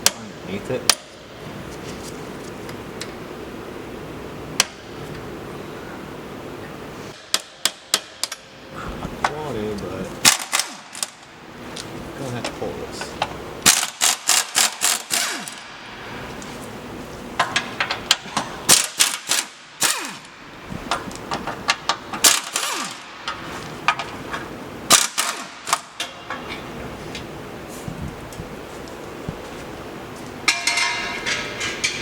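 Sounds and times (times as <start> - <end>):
hammering on steel: 30.5 - 32.0.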